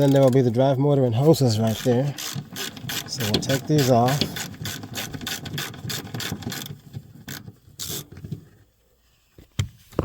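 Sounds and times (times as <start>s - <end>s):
ratchet wrench clicking: 1.7s - 6.7s.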